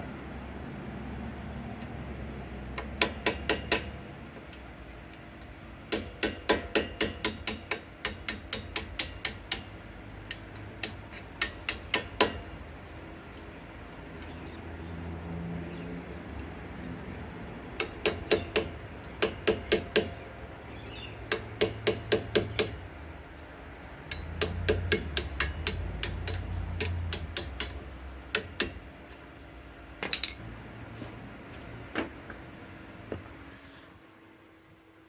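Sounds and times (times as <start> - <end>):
hammer tapping steel punch: 2.8 - 4.0, 5.9 - 12.6, 17.8 - 20.3, 21.3 - 22.9, 24.1 - 29.2, 30.0 - 30.4.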